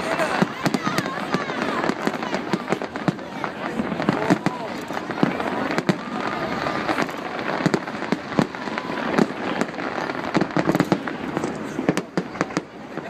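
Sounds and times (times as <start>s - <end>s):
fireworks bursting: 0.0s - 13.0s.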